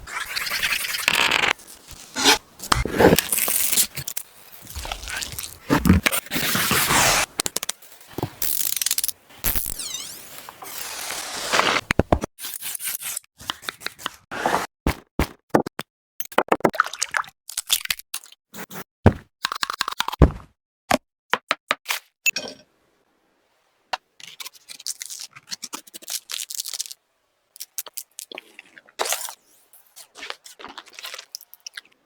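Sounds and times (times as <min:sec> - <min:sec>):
food scraping: 0:00.5 - 0:07.4
tearing: 0:00.8 - 0:07.3.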